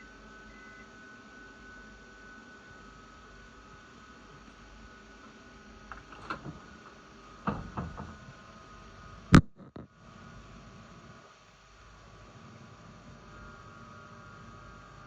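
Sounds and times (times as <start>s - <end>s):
steady electrical hum: 0.0s - 15.0s
light knocks: 5.9s - 8.4s
loud sharp click: 9.3s - 9.9s.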